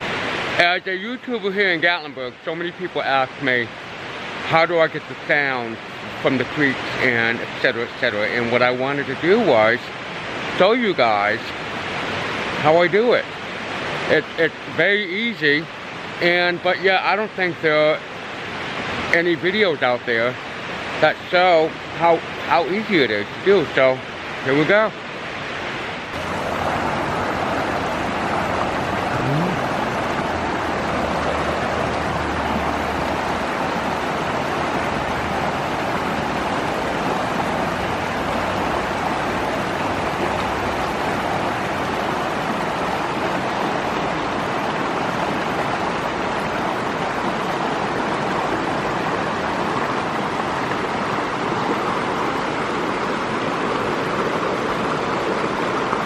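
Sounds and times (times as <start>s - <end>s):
creek water rushing: 0.0s - 56.0s.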